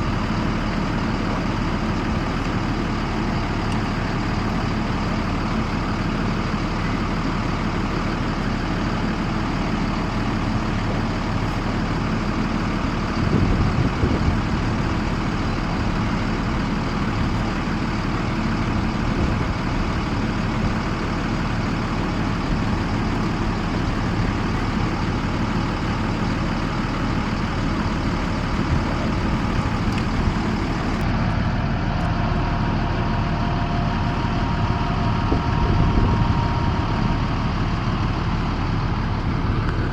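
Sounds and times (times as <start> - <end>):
bus engine idling: 0.0 - 39.9.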